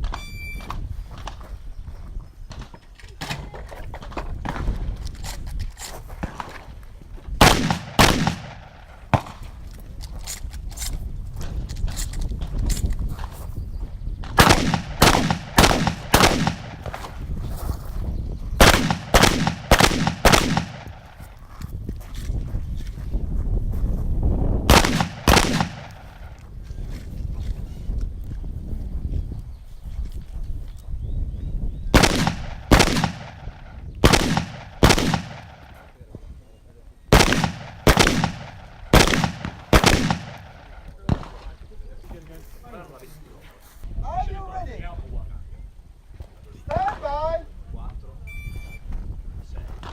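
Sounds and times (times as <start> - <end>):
shotgun shots: 7.4 - 9.6, 14.2 - 17.3, 18.6 - 21.3, 24.7 - 26.4, 31.9 - 35.9, 37.1 - 41.6.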